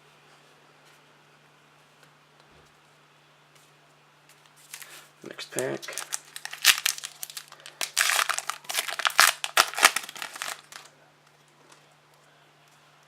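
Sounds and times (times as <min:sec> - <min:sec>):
wrapper being torn and crinkled: 0:04.7 - 0:10.9.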